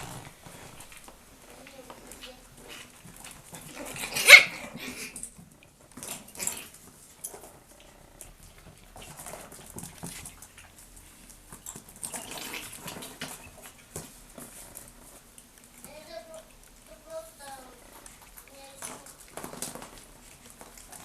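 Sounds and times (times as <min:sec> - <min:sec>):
faint scuffling and clicks: 0:00.0 - 0:04.1, 0:04.8 - 0:21.0
puppy yapping: 0:03.7 - 0:05.0.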